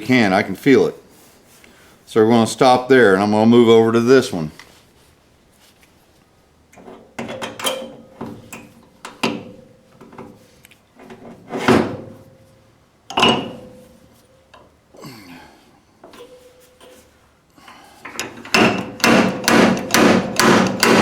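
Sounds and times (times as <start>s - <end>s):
slide hammer metal clanks: 18.1s - 21.0s.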